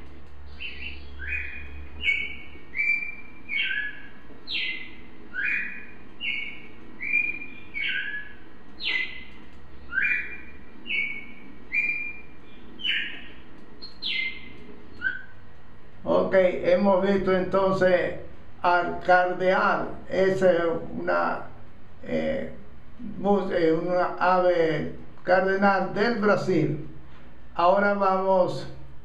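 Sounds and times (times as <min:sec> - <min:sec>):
bird singing whistled phrases: 0:00.5 - 0:15.4.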